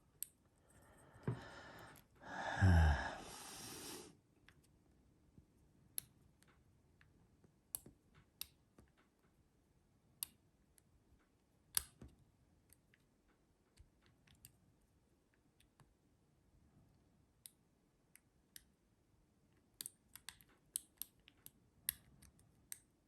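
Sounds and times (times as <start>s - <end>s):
lock pick clicking in a padlock: 19.8s - 22.9s.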